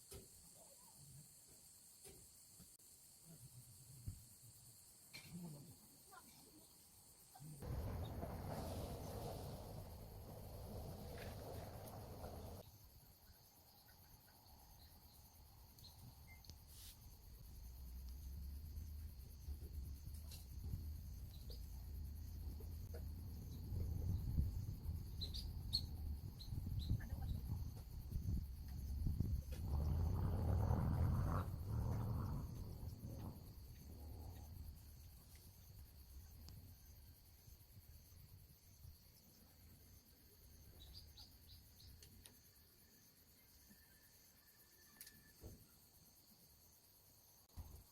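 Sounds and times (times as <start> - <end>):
crickets chirping: 0.0 - 47.9
low rumble: 7.6 - 12.6, 29.2 - 35.0.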